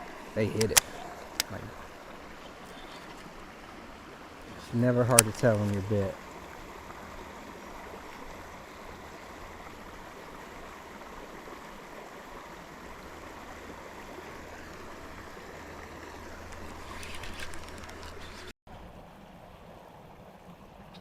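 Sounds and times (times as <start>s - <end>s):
crackling rustle: 0.0s - 3.4s, 4.4s - 6.0s, 14.5s - 18.5s.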